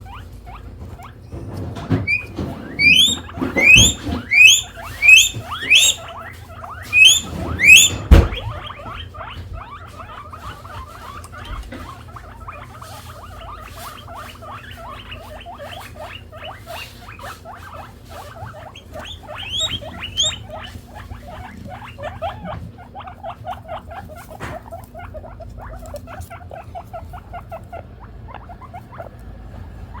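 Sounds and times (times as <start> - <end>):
guinea pig squealing: 0.0 - 30.0
thump: 7.9 - 8.7.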